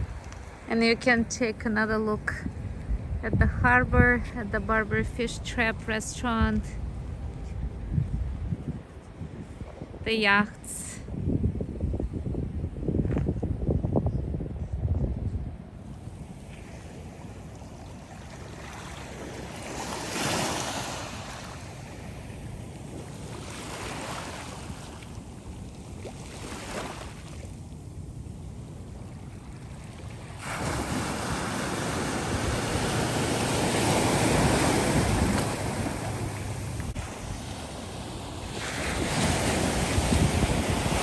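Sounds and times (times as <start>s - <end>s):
wind buffeting microphone: 0.0s - 41.0s
ocean surf washing: 15.8s - 27.8s, 28.4s - 41.0s.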